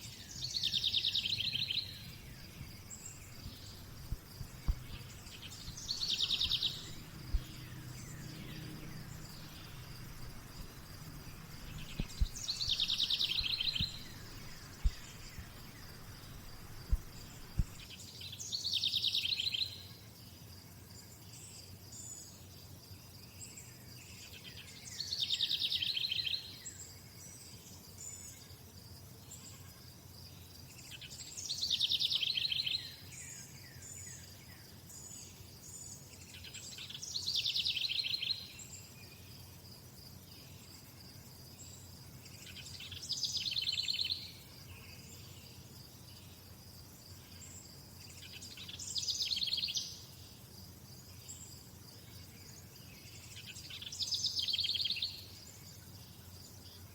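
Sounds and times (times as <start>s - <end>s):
faint bird chirps: 0.0s - 19.8s
insect chirring: 0.4s - 17.9s.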